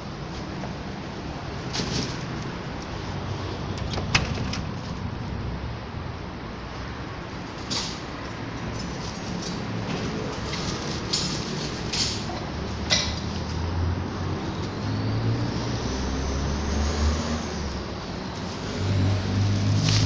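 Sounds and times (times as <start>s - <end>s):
vehicle engines rumbling: 0.0s - 20.0s.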